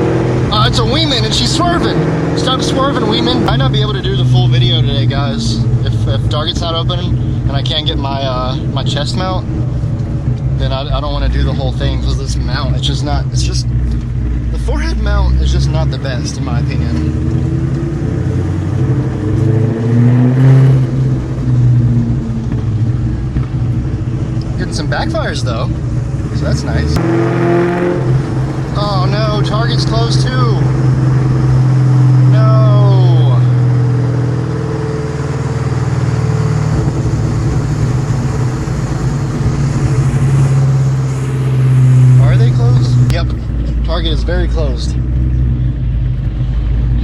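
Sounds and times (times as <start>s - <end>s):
supercharged car engine accelerating: 0.0s - 47.0s.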